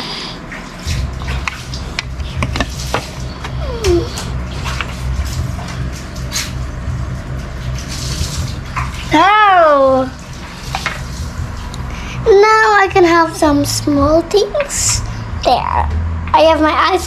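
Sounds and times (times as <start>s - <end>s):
steady low rumble: 0.8s - 17.0s.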